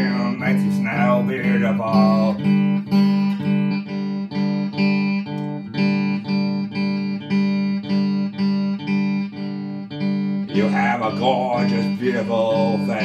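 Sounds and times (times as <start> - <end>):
guitar chord pattern: 0.0 - 13.0.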